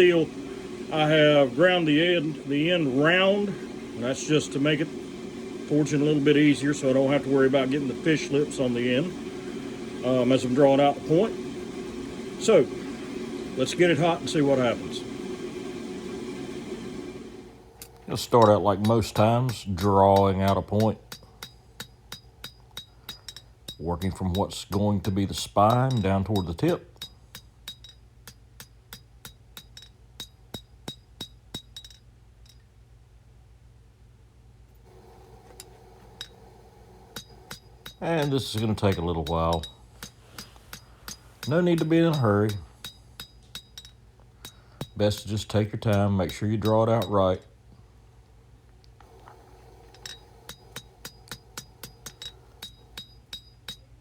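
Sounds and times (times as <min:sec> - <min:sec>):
steady low hum: 0:00.0 - 0:30.0, 0:34.7 - 0:54.0
hammer striking steel on anvil: 0:17.8 - 0:32.6, 0:35.1 - 0:47.4, 0:49.9 - 0:53.9
hammer ringing on anvil: 0:37.2 - 0:47.4, 0:50.0 - 0:53.8.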